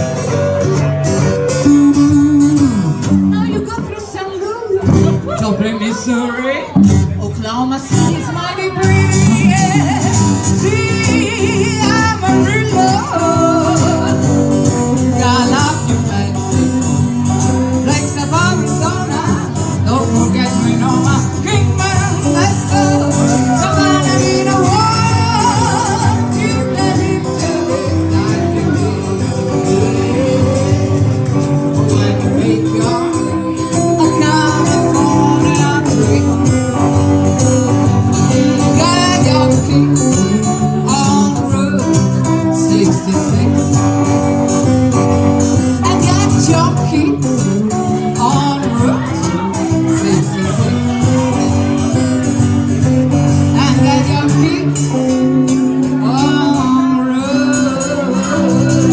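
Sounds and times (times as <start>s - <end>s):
live band with singer: 0.0s - 58.9s.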